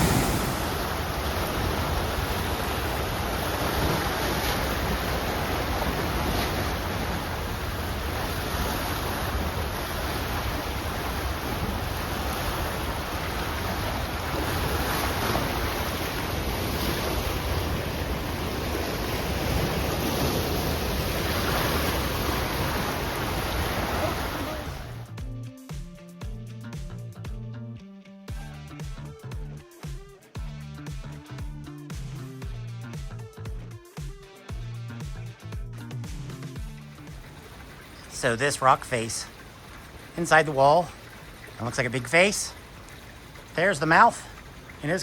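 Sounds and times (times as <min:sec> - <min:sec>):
wind rumbling on microphone: 0:00.0 - 0:25.0
water rushing down spillway: 0:00.0 - 0:25.1, 0:37.0 - 0:45.0.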